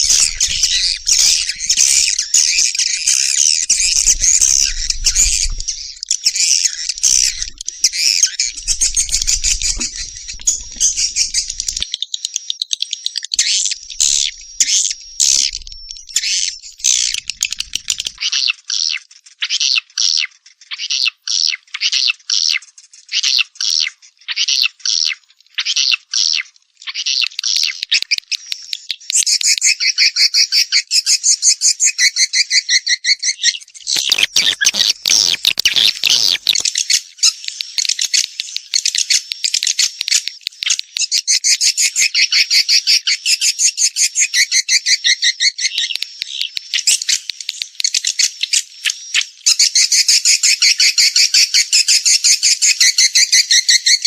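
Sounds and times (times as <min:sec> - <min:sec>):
harsh rattle: 0:00.0 - 0:11.8
swiftlet buzzy chirps and clicks: 0:00.0 - 0:11.9, 0:13.4 - 0:18.2, 0:33.9 - 0:40.6.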